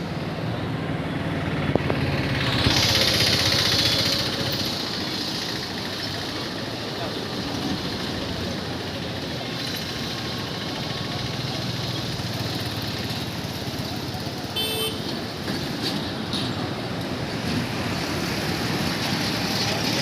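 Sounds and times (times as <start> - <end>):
vehicle and motorcycle traffic: 0.0 - 20.0.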